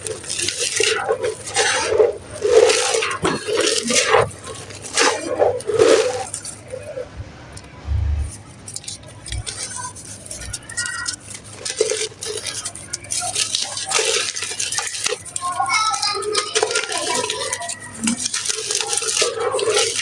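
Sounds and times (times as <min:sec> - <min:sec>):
dull low bumps: 0:07.0 - 0:09.5.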